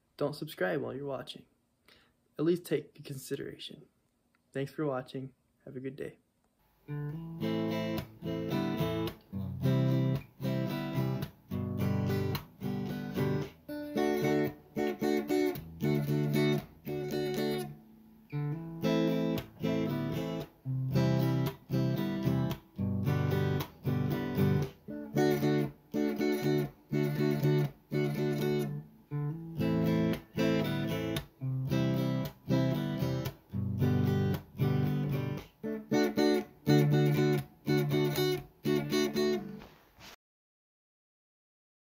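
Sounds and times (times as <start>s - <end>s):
strummed guitar chords: 6.9s - 39.7s.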